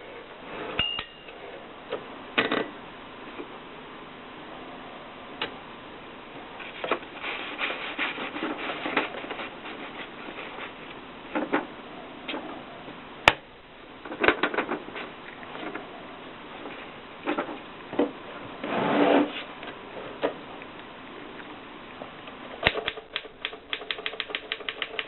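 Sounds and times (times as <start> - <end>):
rubbing and scraping: 6.6 - 11.7, 18.6 - 19.6
clicks: 20.6 - 25.0.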